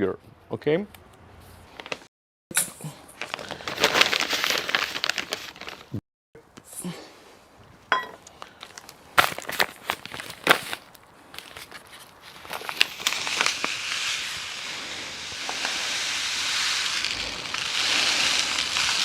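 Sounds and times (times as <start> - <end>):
granular hiss of pouring salt: 12.8 - 19.0.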